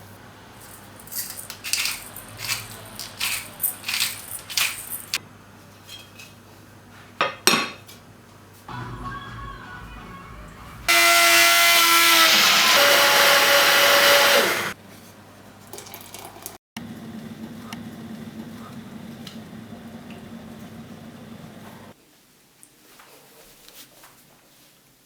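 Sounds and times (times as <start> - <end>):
electric blender motor: 10.8 - 14.8.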